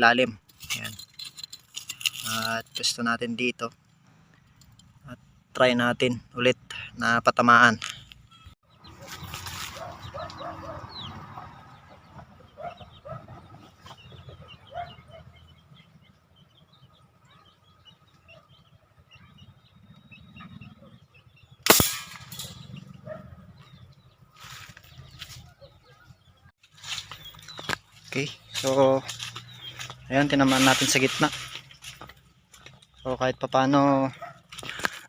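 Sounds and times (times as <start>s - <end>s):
faint bird chirps: 12.1s - 21.6s
toy air gun shot: 21.6s - 22.4s.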